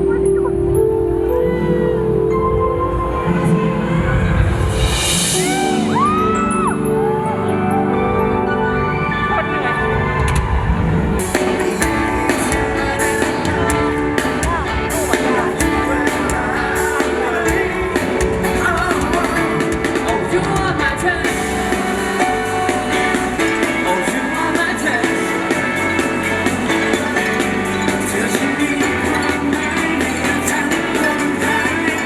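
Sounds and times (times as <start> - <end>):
electric guitar: 2.6 - 32.0
drums: 4.0 - 7.3, 10.2 - 32.0
bass guitar: 7.8 - 32.0
person singing: 11.2 - 32.0.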